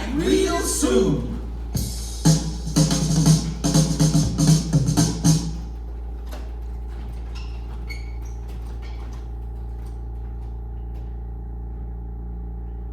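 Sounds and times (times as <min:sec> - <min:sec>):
band music: 0:00.0 - 0:05.5
low electrical hum: 0:00.0 - 0:12.9
drum hit: 0:01.8 - 0:05.6.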